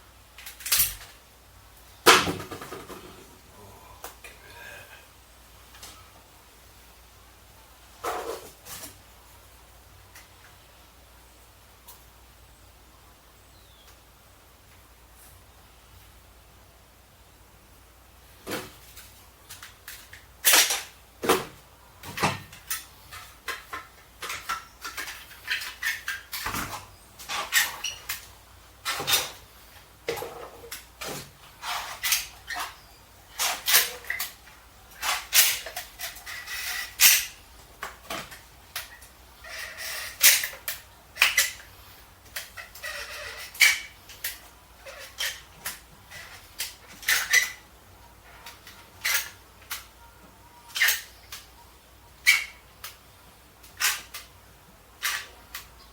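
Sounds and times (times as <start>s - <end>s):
knocks and clatters of hand work: 2.1s - 3.3s, 18.4s - 28.3s.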